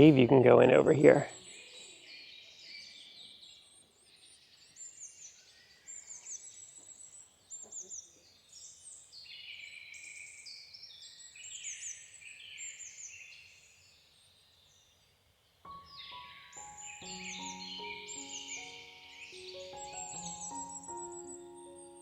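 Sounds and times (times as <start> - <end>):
birds chirping and singing: 15.7 - 22.0.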